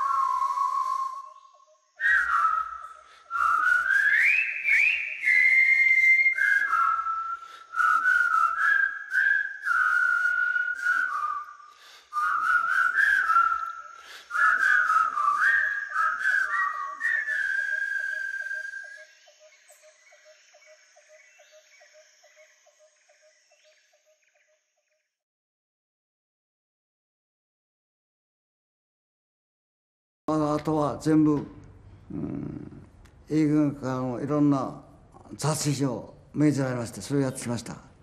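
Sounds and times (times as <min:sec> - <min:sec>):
person whistling a tune: 0:00.0 - 0:01.4, 0:02.0 - 0:19.1.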